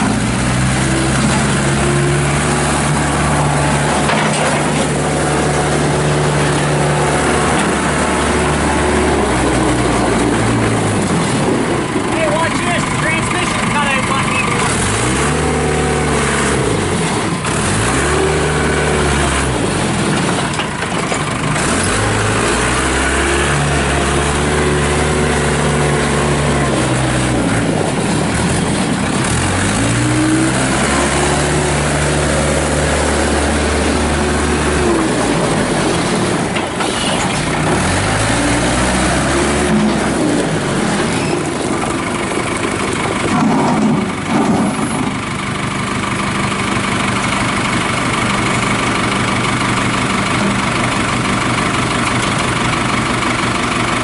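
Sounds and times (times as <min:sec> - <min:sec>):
diesel engine revving: 0:00.0 - 0:54.0
metal clanks: 0:03.9 - 0:05.1.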